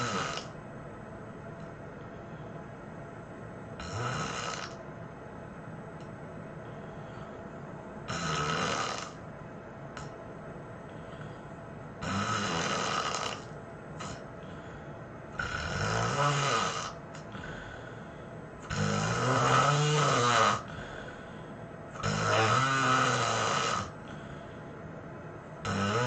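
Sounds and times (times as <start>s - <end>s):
person snoring heavily: 0.0s - 0.6s, 3.8s - 4.8s, 8.1s - 9.2s, 12.0s - 14.7s, 15.4s - 21.4s, 22.0s - 24.5s, 25.6s - 26.0s.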